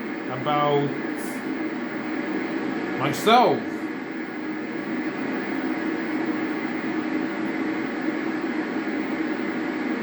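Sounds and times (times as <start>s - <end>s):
background hum and hiss: 0.0s - 10.0s.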